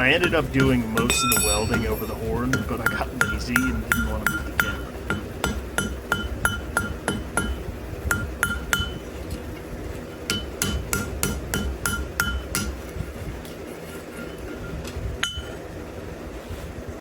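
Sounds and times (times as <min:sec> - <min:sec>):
hammer striking iron on anvil: 0:00.0 - 0:09.0, 0:10.2 - 0:12.8, 0:15.2 - 0:15.6.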